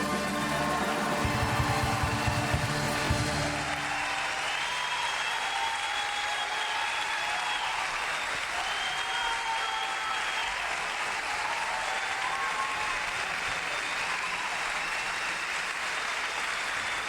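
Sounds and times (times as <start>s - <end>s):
audience applauding: 0.0s - 17.0s.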